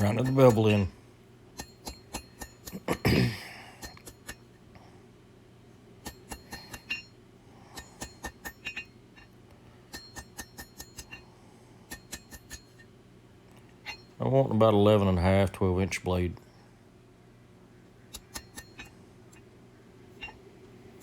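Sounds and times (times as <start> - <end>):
hammer striking steel on anvil: 1.6 - 2.9, 6.0 - 7.2, 7.8 - 8.9, 9.9 - 11.2, 11.9 - 12.8, 18.1 - 18.9.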